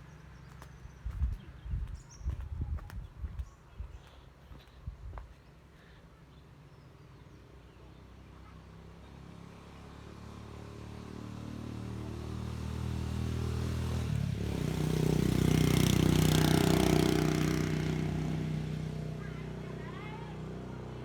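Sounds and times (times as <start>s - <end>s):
vehicle engine passing by: 8.8s - 21.0s.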